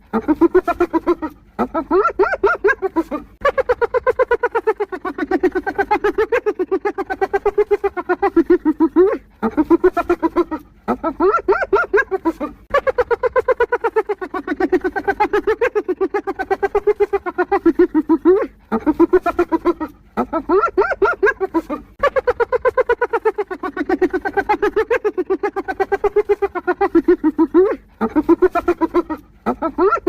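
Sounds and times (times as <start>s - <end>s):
hyena giggling: 0.0s - 30.0s.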